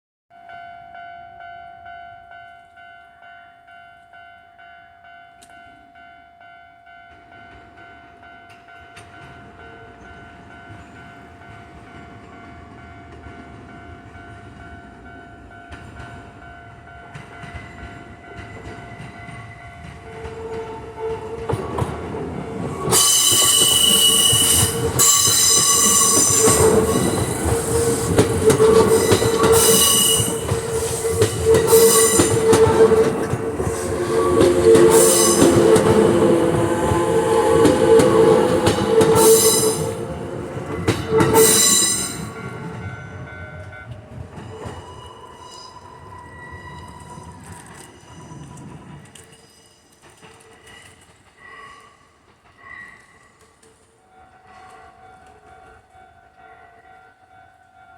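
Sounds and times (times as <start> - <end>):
electric train running noise: 9.0 - 51.4
train squealing tones: 17.1 - 55.8
level crossing alarm ringing: 22.9 - 44.2.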